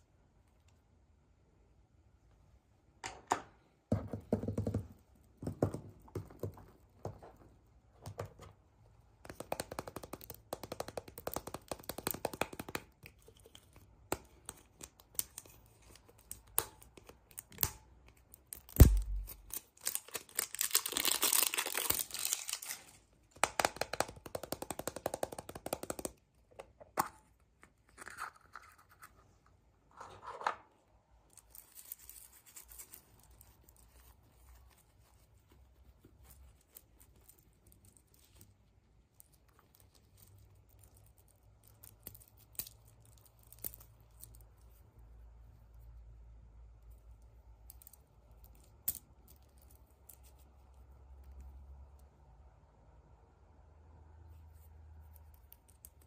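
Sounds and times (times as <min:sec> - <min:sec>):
packaging rustling and tearing: 0:18.6 - 0:23.0.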